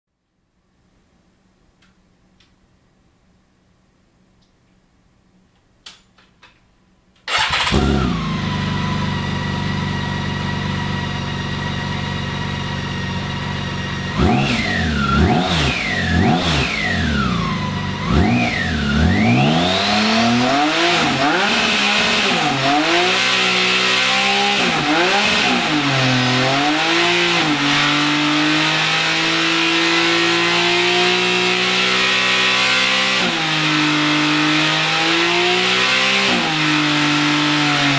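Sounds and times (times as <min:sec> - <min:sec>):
motorcycle engine starting and idling: 0:07.2 - 0:20.8
engine revving in quick blips: 0:07.3 - 0:09.1, 0:14.1 - 0:37.9.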